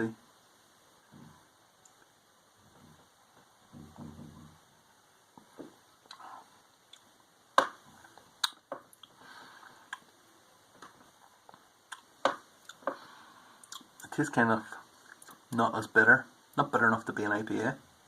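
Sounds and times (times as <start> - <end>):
lip smacks and tongue clicks: 8.1 - 9.2, 11.9 - 12.8, 13.6 - 14.1.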